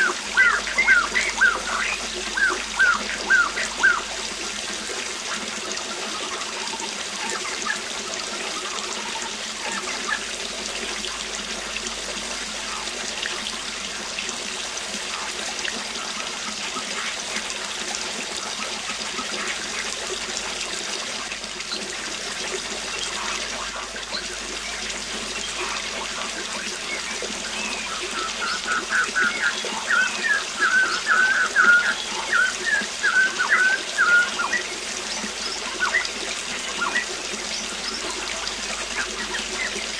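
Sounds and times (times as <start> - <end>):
waterfall rushing: 0.0 - 39.9
bird chirps: 0.4 - 4.1.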